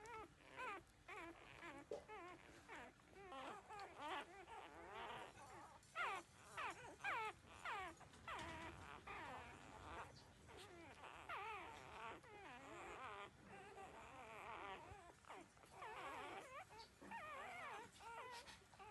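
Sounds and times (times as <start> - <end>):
puppies whimpering and squealing: 0.0 - 18.9.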